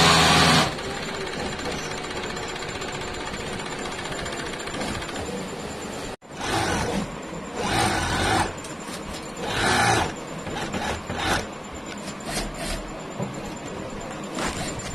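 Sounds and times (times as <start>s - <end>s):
steady machine noise: 0.0s - 14.9s
rasping rubbing noise: 9.4s - 12.9s.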